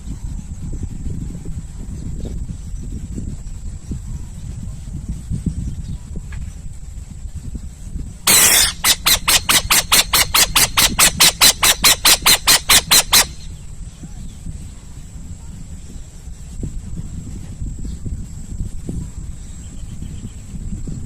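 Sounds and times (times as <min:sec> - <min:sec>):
owl hissing: 0:08.3 - 0:13.5
owl raspy pulsing call: 0:08.3 - 0:13.5.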